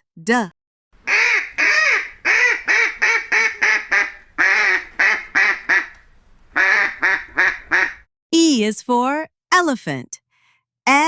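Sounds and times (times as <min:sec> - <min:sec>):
duck quacking: 0:01.0 - 0:08.0.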